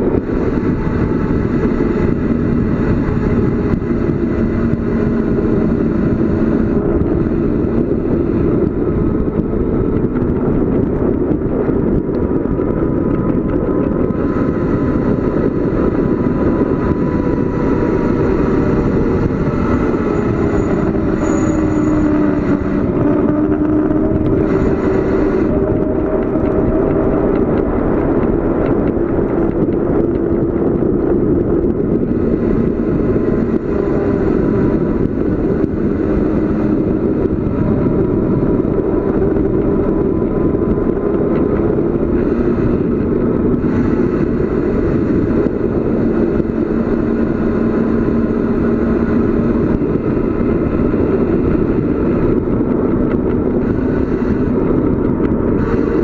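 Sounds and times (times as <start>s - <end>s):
road rumble: 0.0s - 56.0s
wind rush: 0.0s - 56.0s
faint droning tone: 13.4s - 30.0s.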